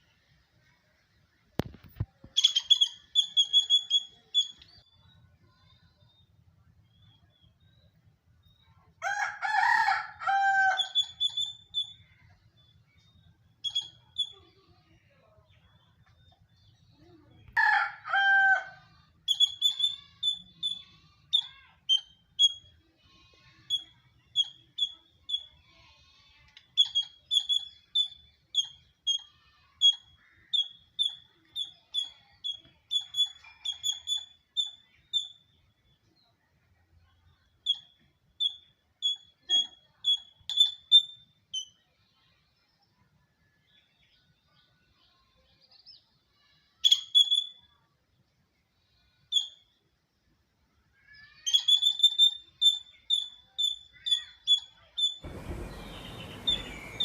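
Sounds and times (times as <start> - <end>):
squirrel chirping: 2.4 - 4.7, 10.8 - 12.0, 13.6 - 14.4, 19.3 - 22.7, 26.8 - 29.2, 29.9 - 35.4, 37.6 - 41.7, 51.4 - 57.0
rooster crowing: 9.0 - 11.0, 17.6 - 18.9.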